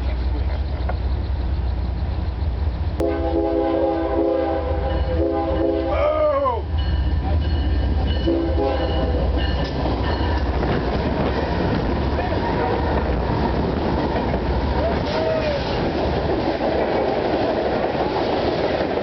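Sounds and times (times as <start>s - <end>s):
low rumble of passing train: 0.0s - 19.0s
locomotive air horn chord: 3.0s - 6.2s, 8.2s - 9.3s.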